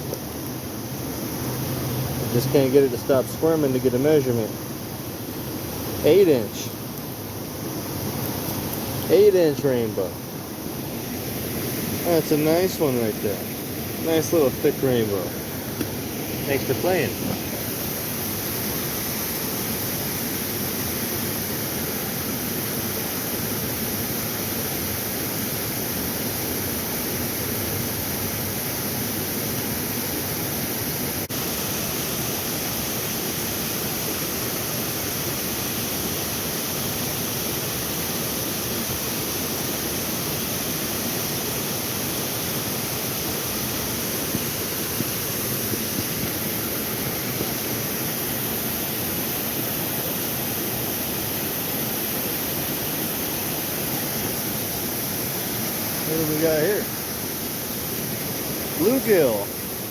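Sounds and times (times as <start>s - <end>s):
creek water rushing: 0.0s - 59.9s.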